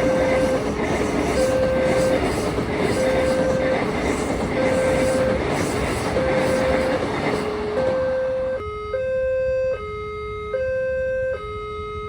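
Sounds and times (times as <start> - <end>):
level crossing two-tone alarm: 0.0 - 0.7, 1.3 - 2.3, 3.0 - 3.9, 4.6 - 5.4, 6.1 - 7.0, 7.8 - 12.0
train wheels clattering: 0.0 - 8.0.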